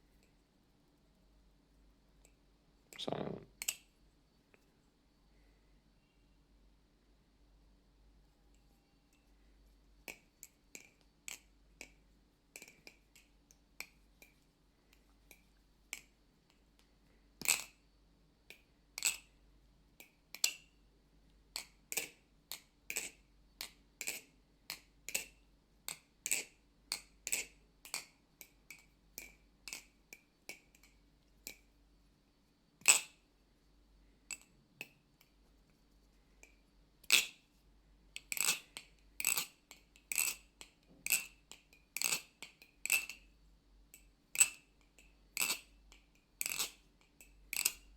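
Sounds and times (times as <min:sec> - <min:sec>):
butterfly knife clicking and clacking: 0:38.2 - 0:43.2, 0:43.9 - 0:47.9.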